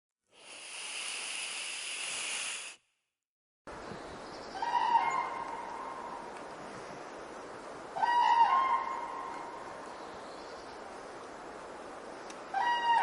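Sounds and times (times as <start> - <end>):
faint outdoor background: 0.2 - 13.0
snake hissing: 0.3 - 3.0
crane calling: 4.5 - 6.2, 7.9 - 9.7, 12.5 - 13.0.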